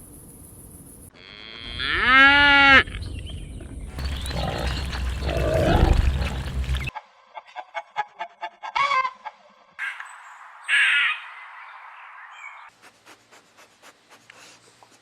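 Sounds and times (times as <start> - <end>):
cows mooing: 4.0 - 6.9.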